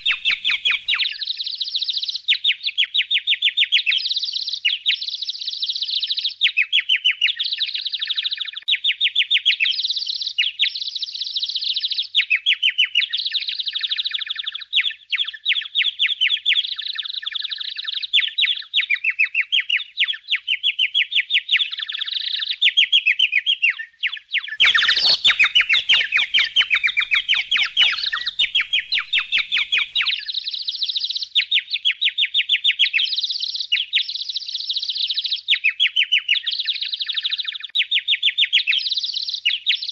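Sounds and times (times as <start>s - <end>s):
budgies chattering: 0.0s - 1.2s, 24.6s - 30.3s.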